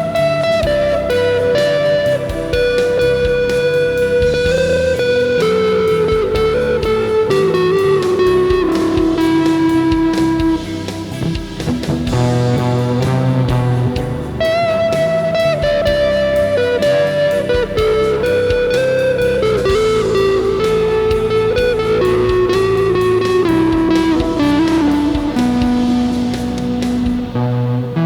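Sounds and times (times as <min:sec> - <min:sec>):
ambient rock backing track: 0:00.0 - 0:28.0
electric guitar lead: 0:00.0 - 0:28.0.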